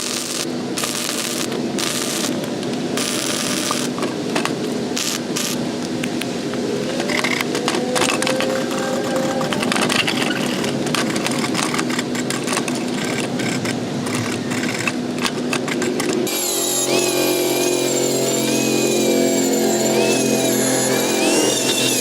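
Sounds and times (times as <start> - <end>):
small engine running: 15.7 - 22.0.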